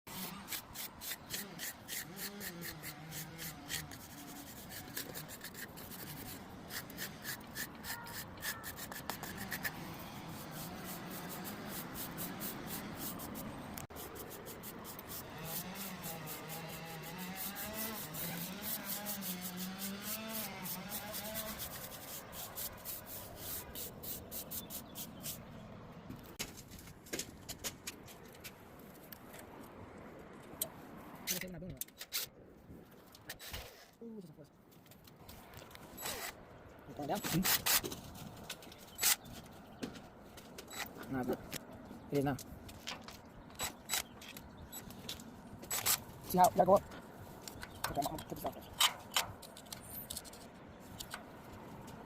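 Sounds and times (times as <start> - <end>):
stone scraped by hand: 0.1 - 25.5.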